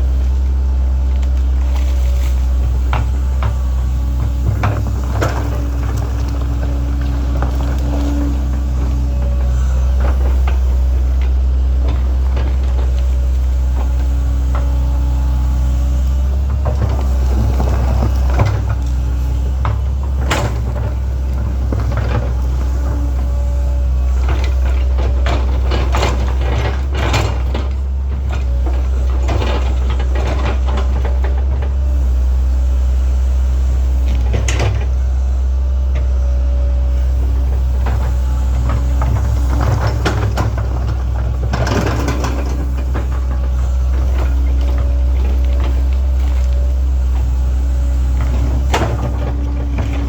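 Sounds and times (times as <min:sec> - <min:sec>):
excavator diesel engine running: 0:00.0 - 0:50.0
bucket clanking and scraping: 0:01.6 - 0:14.7.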